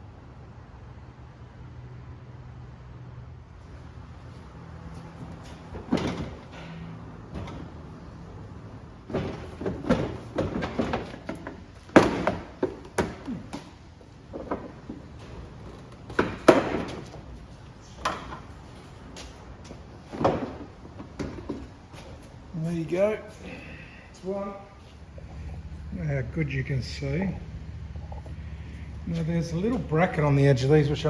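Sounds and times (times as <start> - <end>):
plastic bumper knocking and scraping: 5.2 - 17.3, 20.0 - 22.0.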